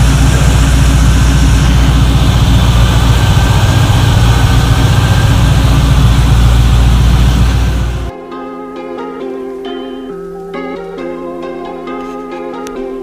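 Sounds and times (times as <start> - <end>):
car engine idling: 0.0 - 8.1.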